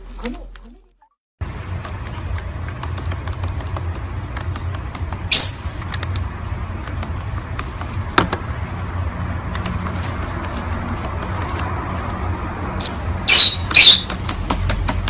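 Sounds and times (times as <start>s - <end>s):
parrot squawk: 5.3s - 5.6s, 12.8s - 14.1s.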